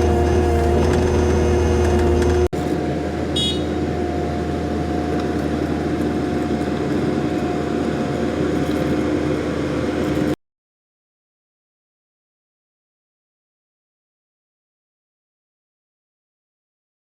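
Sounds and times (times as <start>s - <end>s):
diesel engine running: 0.0s - 10.4s.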